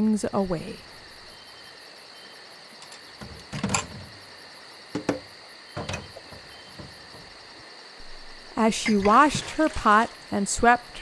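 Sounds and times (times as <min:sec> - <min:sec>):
crickets chirping: 0:00.0 - 0:11.0
household things clunking: 0:02.8 - 0:11.0.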